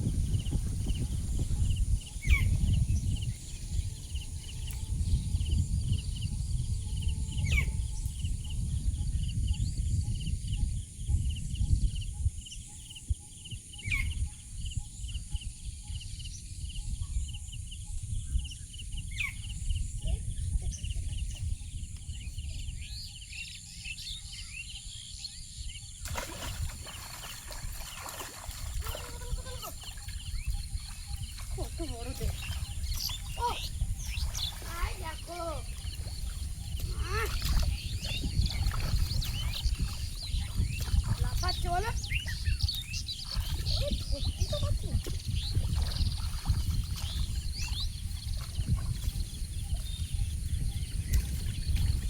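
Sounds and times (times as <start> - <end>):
insects buzzing: 21.5 - 51.1.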